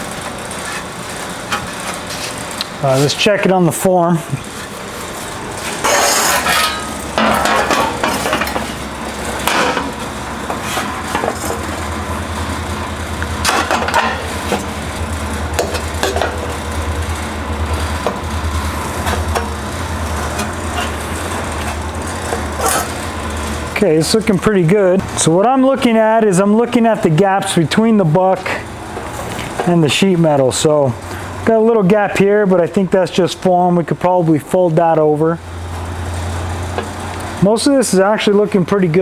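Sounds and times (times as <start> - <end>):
sheet metal clanking and scraping: 4.6 - 11.9, 13.4 - 29.8.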